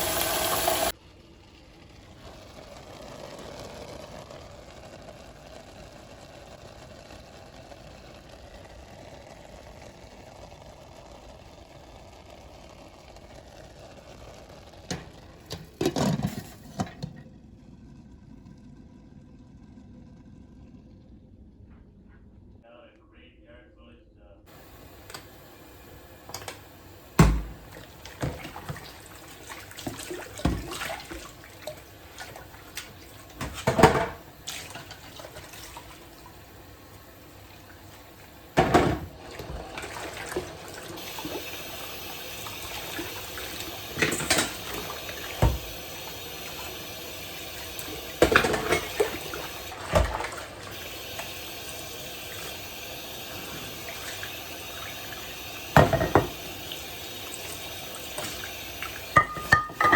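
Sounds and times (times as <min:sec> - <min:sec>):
tap water running into sink: 0:00.0 - 0:00.9, 0:24.5 - 0:59.9.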